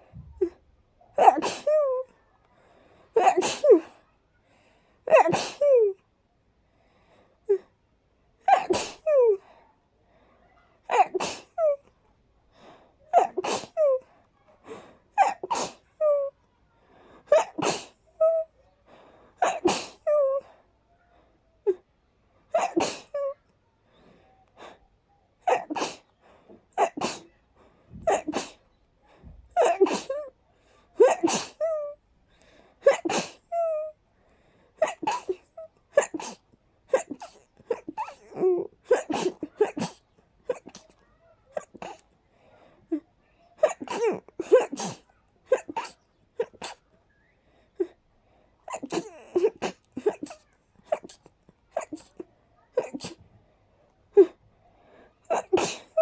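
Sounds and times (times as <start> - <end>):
person sneezing: 1.2 - 1.8, 3.2 - 3.9, 5.1 - 5.6, 8.5 - 9.1, 10.9 - 11.6, 13.1 - 13.8, 15.2 - 15.9, 17.3 - 18.0, 19.4 - 20.1, 22.6 - 23.2, 25.5 - 26.1, 26.8 - 27.3, 28.0 - 28.6, 29.6 - 30.2, 31.0 - 31.6, 32.8 - 33.5, 34.8 - 41.0, 41.6 - 42.0, 43.6 - 46.8, 48.7 - 51.2, 52.8 - 53.2, 55.3 - 56.0.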